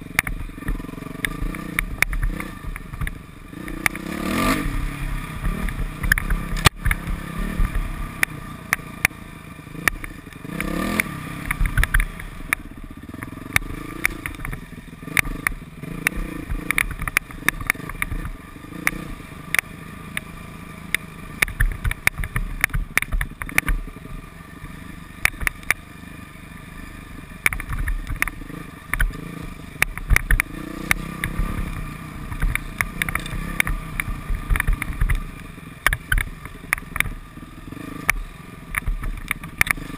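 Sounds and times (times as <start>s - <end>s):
dirt bike engine revving: 0.0s - 39.9s
sharp knocks and clatter: 0.2s - 4.0s, 5.4s - 9.2s, 9.8s - 12.6s, 13.2s - 20.3s, 20.9s - 23.9s, 27.4s - 29.2s, 29.8s - 37.2s, 38.0s - 39.9s.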